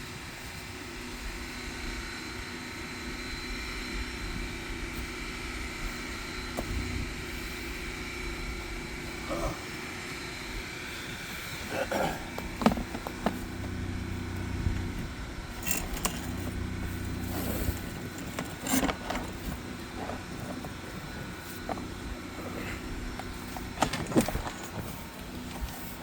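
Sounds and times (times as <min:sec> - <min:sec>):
engine running: 0:00.0 - 0:26.0
clicks and light rattles: 0:14.8 - 0:16.6.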